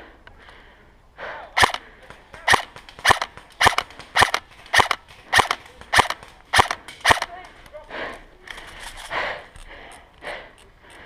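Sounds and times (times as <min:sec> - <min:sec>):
airsoft gun shots: 0:01.6 - 0:07.4.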